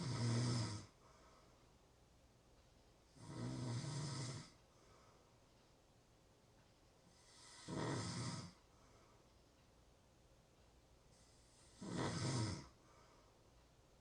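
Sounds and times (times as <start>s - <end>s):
person snoring: 0.0s - 1.0s, 3.2s - 4.6s, 7.1s - 8.6s, 11.3s - 12.8s
quiet breathing: 0.0s - 10.0s, 10.6s - 14.0s.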